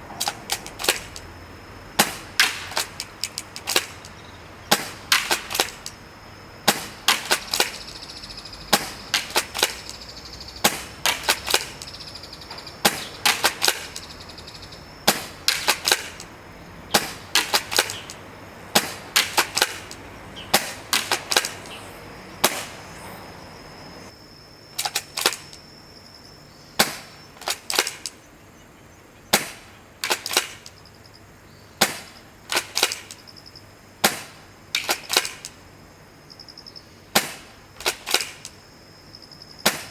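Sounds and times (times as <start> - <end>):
airsoft shotgun firing: 2.0 - 4.1, 4.7 - 6.0, 8.7 - 10.0, 10.6 - 12.0, 12.8 - 14.1, 15.1 - 16.3, 16.9 - 21.8, 22.4 - 22.8
shotgun pump clacking: 2.4 - 4.2, 17.0 - 18.2.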